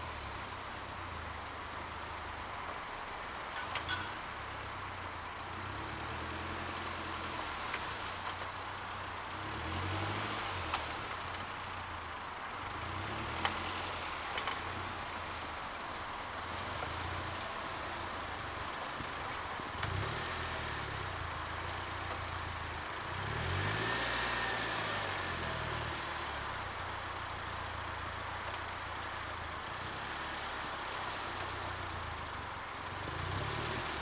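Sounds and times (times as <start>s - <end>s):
car engine at low revs: 0.0s - 34.0s
high squeaks: 13.4s - 13.9s.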